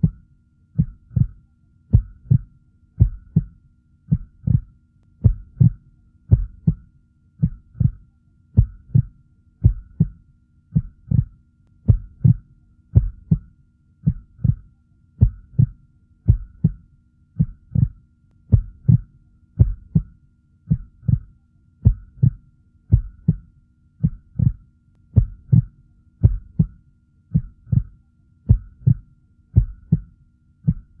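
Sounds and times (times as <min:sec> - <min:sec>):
heartbeat thumps: 0:00.0 - 0:00.2, 0:00.8 - 0:08.0, 0:08.6 - 0:24.6, 0:25.2 - 0:31.0
faint steady hum: 0:00.0 - 0:31.0.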